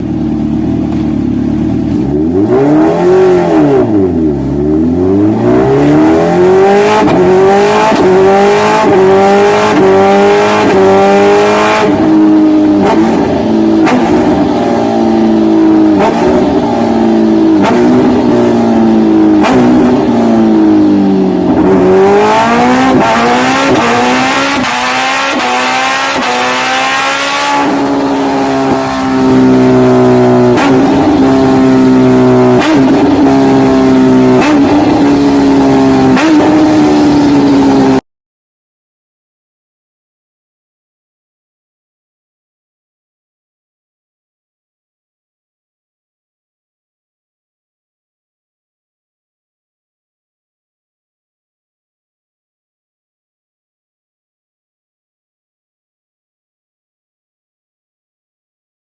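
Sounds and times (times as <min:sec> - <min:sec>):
motorcycle engine accelerating: 0:00.0 - 0:38.0.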